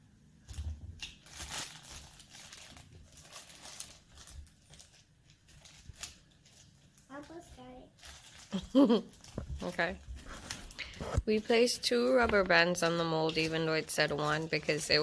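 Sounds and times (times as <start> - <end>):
plastic mould rustling and scraping: 9.2 - 15.0.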